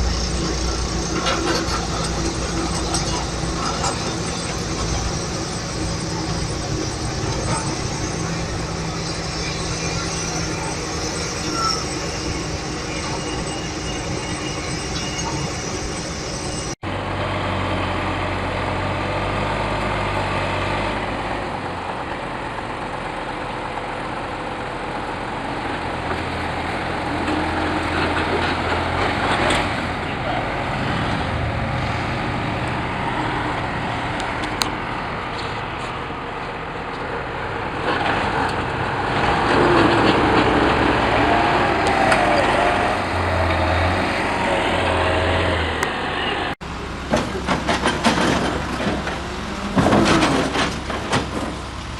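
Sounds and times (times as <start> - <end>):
mechanical clatter: 0.0 - 16.8
diesel machinery rumbling: 0.0 - 51.9.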